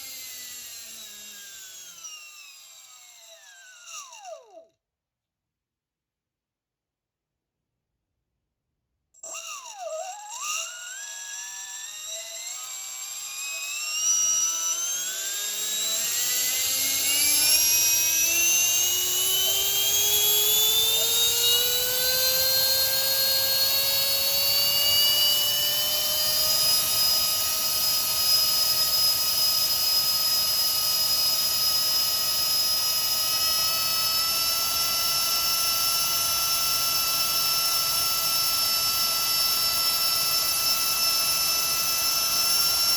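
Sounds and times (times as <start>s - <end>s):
electric ducted fan whine: 14.4s - 31.9s.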